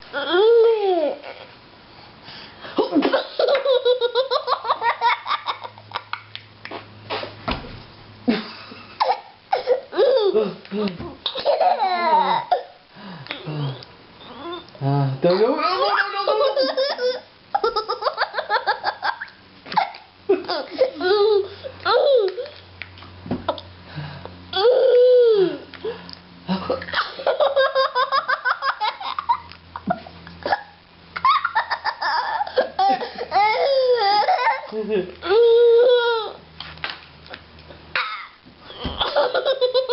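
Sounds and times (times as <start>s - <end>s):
baby laughing: 2.8s - 6.3s, 9.0s - 10.4s, 11.2s - 12.8s, 15.3s - 22.5s, 26.8s - 34.8s, 37.9s - 39.9s
wet mouth noises: 6.6s - 7.3s
person laughing: 8.3s - 9.1s, 20.3s - 21.5s, 31.3s - 34.2s.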